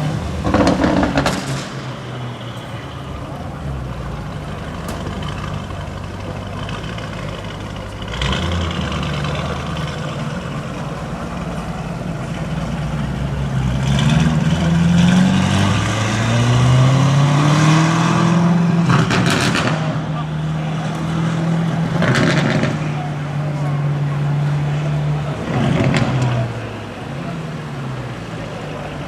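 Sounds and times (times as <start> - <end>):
car engine revving: 0.0 - 29.0.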